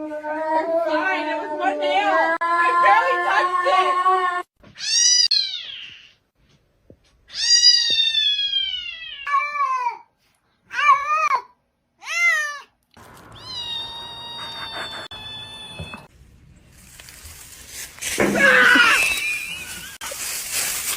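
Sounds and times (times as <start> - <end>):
background noise: 0.0 - 20.9
cat meowing: 13.2 - 16.1.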